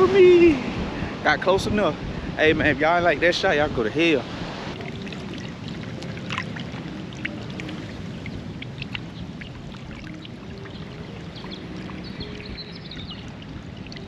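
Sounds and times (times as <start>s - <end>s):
water sloshing and splashing: 4.3s - 14.0s
small splashes and drips: 4.8s - 14.0s.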